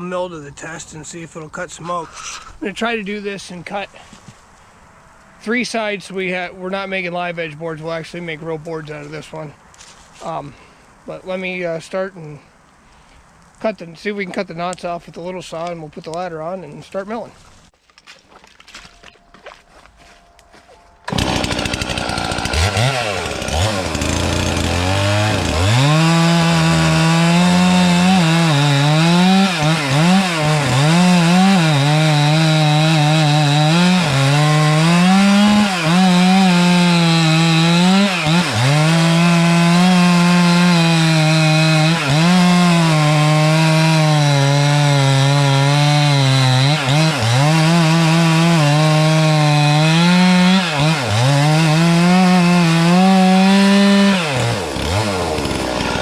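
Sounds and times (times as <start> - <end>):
chainsaw cutting wood: 21.1 - 56.0.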